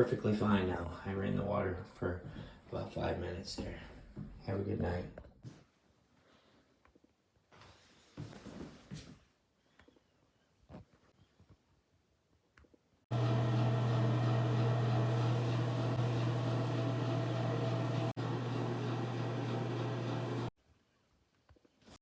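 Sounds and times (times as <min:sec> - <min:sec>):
electric motor hum: 0:13.1 - 0:20.5.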